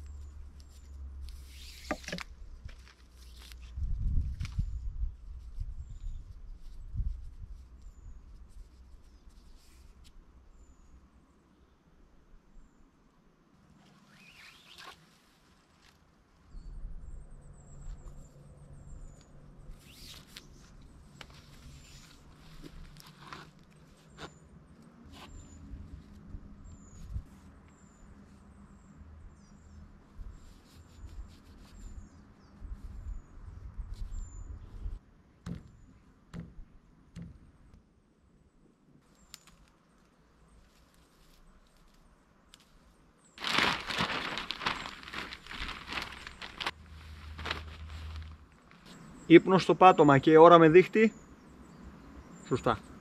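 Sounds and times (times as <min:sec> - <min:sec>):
bird chirps: 0:14.0 - 0:15.0
dull thuds: 0:35.4 - 0:37.8.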